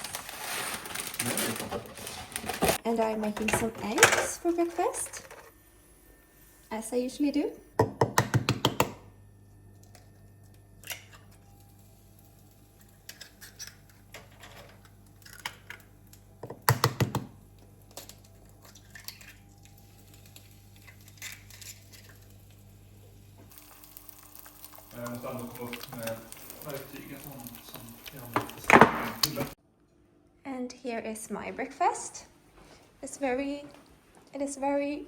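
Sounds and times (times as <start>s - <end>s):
steady low hum: 9.0s - 16.4s.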